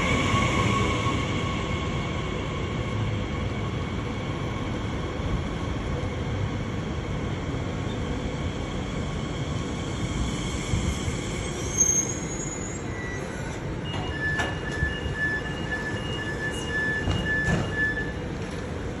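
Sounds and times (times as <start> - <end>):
train wheels rumbling on rails: 0.0 - 19.0
high brake squeal: 11.1 - 18.3
train clunks: 13.8 - 15.0, 16.5 - 18.7.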